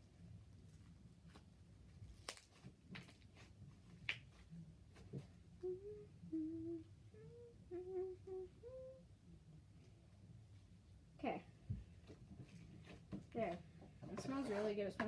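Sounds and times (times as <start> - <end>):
woman humming: 5.6 - 9.2.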